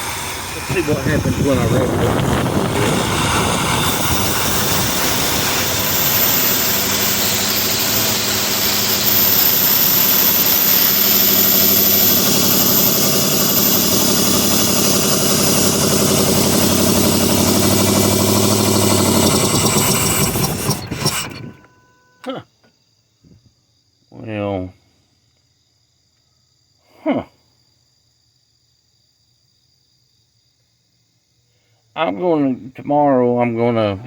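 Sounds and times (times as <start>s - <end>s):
engine running and revving: 0.0s - 22.1s.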